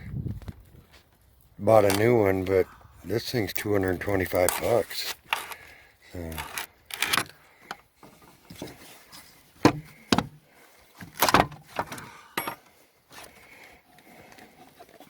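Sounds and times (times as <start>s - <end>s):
plastic parts knocking and clicking: 9.6s - 10.4s.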